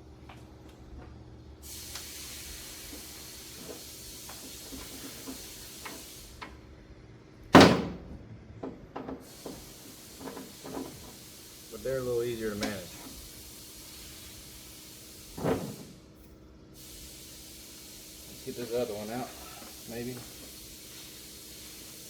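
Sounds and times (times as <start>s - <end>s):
steady hiss: 1.6s - 6.8s, 9.0s - 22.0s
loud knock: 7.6s - 8.1s.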